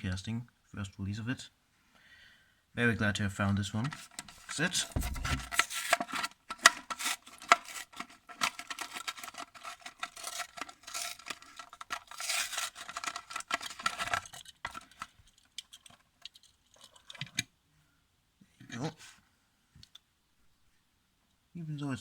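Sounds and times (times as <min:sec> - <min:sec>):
plastic packaging crinkling: 0:03.9 - 0:17.1.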